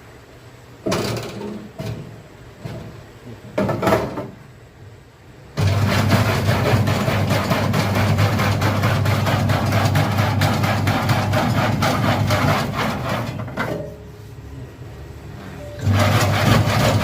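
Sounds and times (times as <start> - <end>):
clatter of cutting strokes: 5.6 - 13.6, 15.8 - 17.0.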